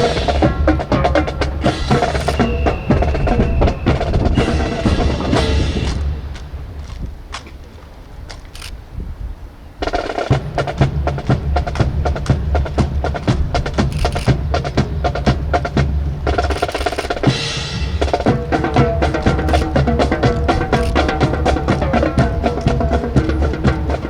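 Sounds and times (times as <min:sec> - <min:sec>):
pitched notes: 0:00.0 - 0:06.5, 0:16.4 - 0:24.0
bass drum beat: 0:00.0 - 0:06.6, 0:10.3 - 0:24.0
snare drum strokes and rolls: 0:00.0 - 0:07.5, 0:09.8 - 0:24.0.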